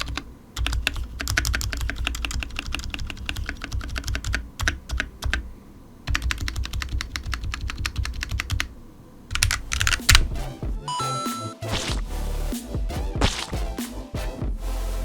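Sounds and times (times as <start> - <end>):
clacky mechanical keyboard typing: 0.0 - 5.4, 6.1 - 8.7, 9.3 - 10.3.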